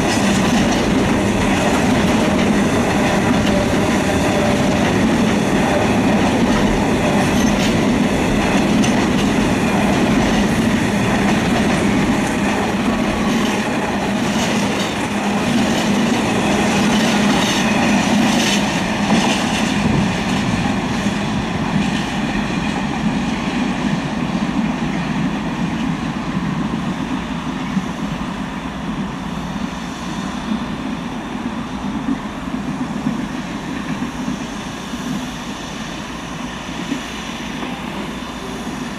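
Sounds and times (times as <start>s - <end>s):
train wheels clattering over rails: 0.0s - 27.9s
wind buffeting microphone: 0.0s - 29.2s.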